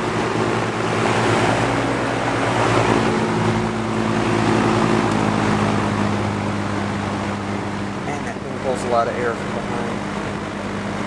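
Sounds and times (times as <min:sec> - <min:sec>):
box fan air rush: 0:00.0 - 0:11.0
fan motor hum: 0:00.0 - 0:11.0.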